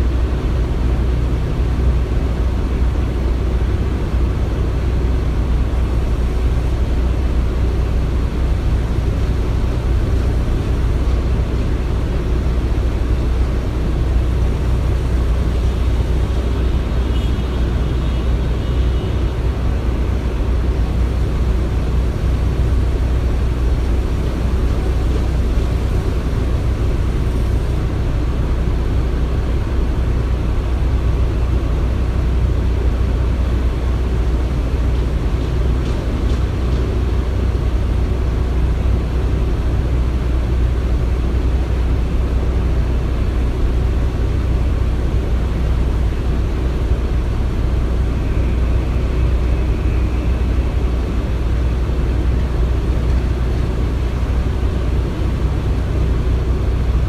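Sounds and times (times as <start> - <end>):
deep machinery rumble: 0.0 - 57.0
faint high whine: 8.7 - 19.4, 47.0 - 56.7.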